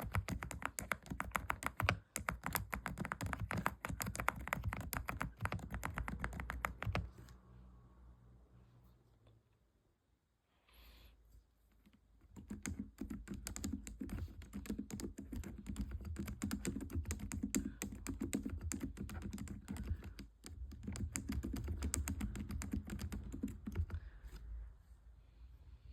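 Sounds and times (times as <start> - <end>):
keyboard typing: 0.0 - 7.4, 12.2 - 24.0.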